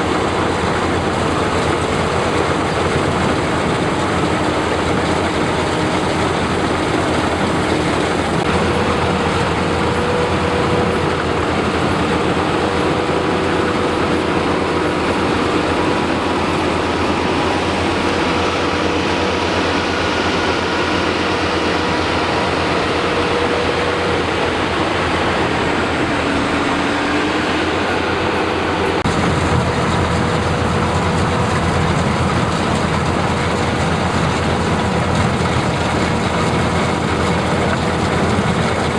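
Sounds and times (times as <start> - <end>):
combine harvester running: 0.0 - 38.9.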